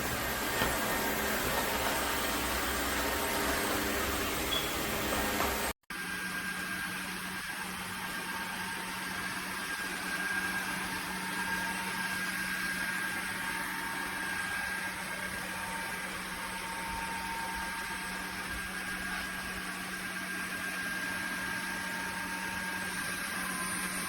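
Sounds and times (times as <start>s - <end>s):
floor vacuum motor hum: 0.0s - 24.0s.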